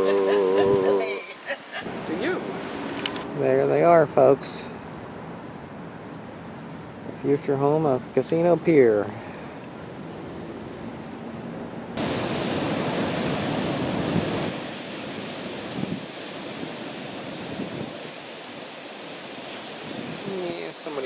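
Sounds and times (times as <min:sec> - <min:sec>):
wind on microphone: 0:00.0 - 0:03.3, 0:12.0 - 0:18.7, 0:19.4 - 0:20.5
ocean surf washing: 0:00.0 - 0:11.2, 0:12.0 - 0:21.0.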